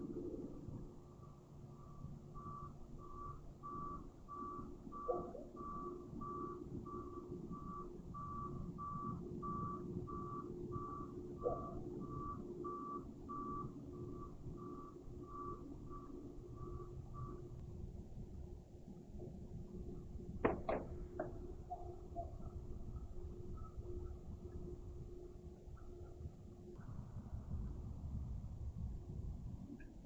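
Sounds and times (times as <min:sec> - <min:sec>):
low background rumble: 0:00.0 - 0:30.0
distant dog barking: 0:05.0 - 0:05.6, 0:11.4 - 0:11.9, 0:21.6 - 0:22.6.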